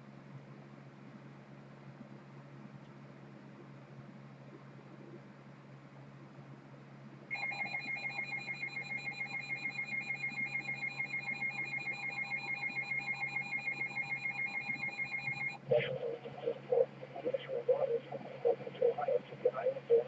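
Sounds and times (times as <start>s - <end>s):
pulsing alarm tone: 7.3s - 15.6s.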